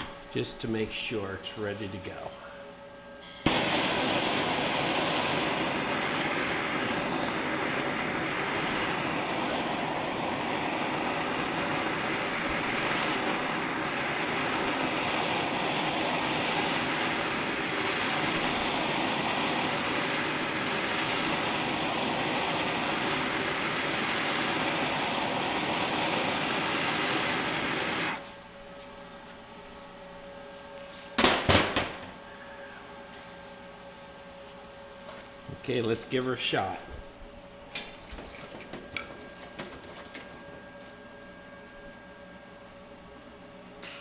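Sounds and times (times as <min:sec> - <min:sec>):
torch rushing hiss: 0:03.2 - 0:28.3
sharp pop: 0:31.2 - 0:32.1.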